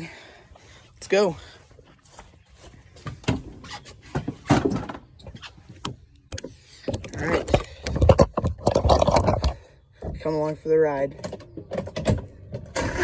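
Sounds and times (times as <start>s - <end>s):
fishing gear knocking and rattling: 5.9s - 9.6s.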